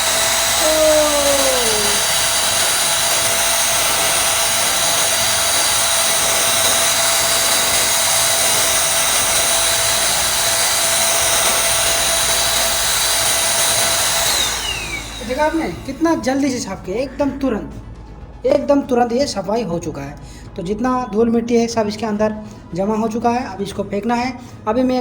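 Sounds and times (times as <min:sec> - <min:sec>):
handheld vacuum cleaner running: 0:00.0 - 0:16.4
falling tone: 0:00.6 - 0:02.3.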